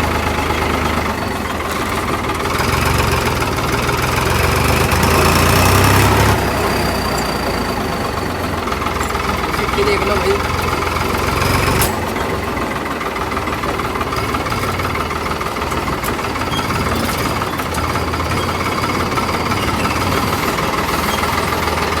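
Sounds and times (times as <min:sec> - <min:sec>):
tractor diesel engine idling: 0:00.0 - 0:22.0.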